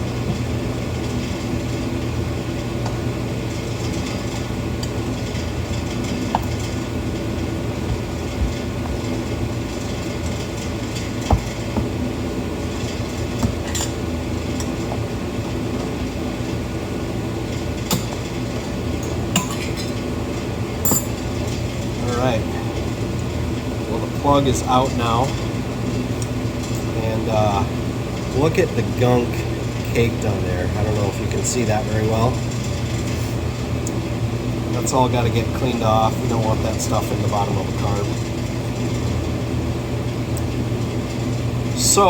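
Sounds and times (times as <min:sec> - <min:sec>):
furnace humming: 0:00.0 - 0:42.0
hand tools clinking on metal: 0:20.8 - 0:21.2.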